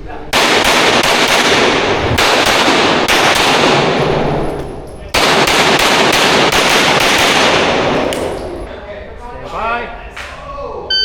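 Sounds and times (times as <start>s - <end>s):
rapid pistol fire: 0.3s - 8.3s.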